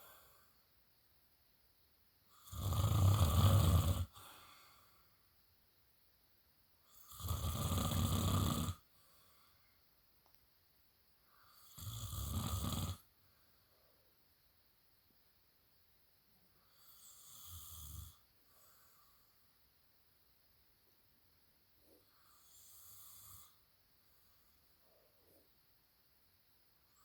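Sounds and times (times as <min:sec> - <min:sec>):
quiet breathing: 0:00.0 - 0:05.6, 0:06.8 - 0:10.4, 0:11.1 - 0:15.1, 0:16.3 - 0:20.4, 0:21.7 - 0:27.0
man snoring heavily: 0:02.4 - 0:04.5, 0:06.9 - 0:08.8, 0:11.6 - 0:13.1, 0:16.8 - 0:18.2, 0:22.3 - 0:23.6.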